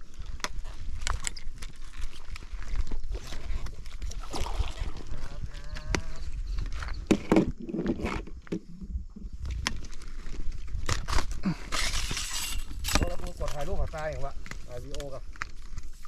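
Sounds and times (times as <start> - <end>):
water splashing and sloshing: 2.6 - 5.3.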